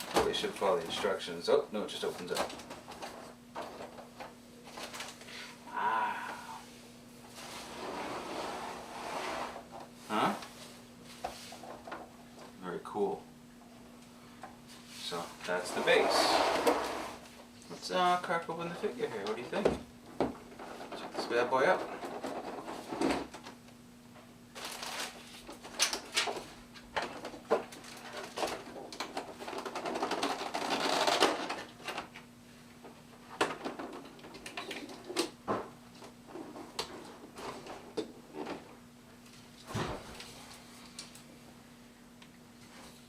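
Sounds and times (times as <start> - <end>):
packaging rustling: 24.6 - 26.4.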